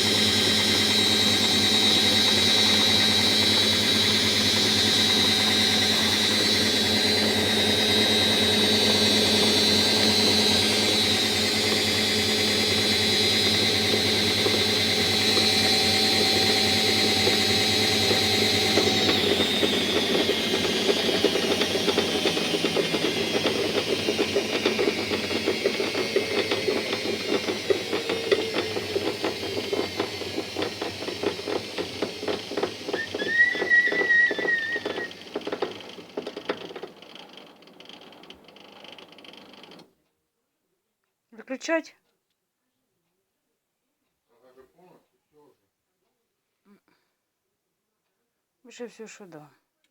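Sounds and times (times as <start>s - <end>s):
washing machine drum spinning: 0.0s - 39.8s
rapid knocking from drum: 13.7s - 39.8s
high-pitched squeal: 23.3s - 35.3s.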